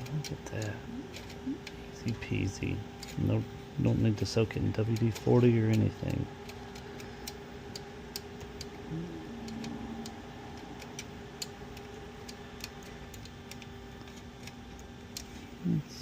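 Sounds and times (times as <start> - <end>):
typewriter metal parts clicking: 4.2 - 8.2
low hum: 8.1 - 12.4.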